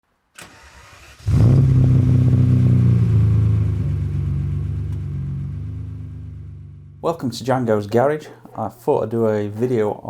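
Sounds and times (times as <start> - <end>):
car engine starting and idling: 0.4 - 7.0.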